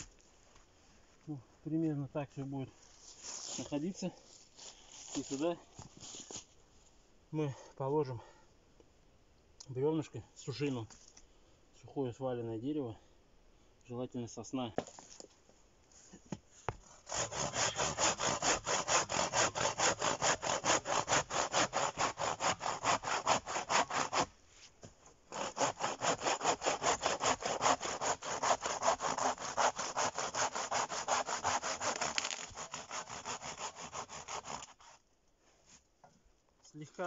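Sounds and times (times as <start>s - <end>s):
hand saw cutting log: 16.7s - 24.3s, 25.3s - 35.0s.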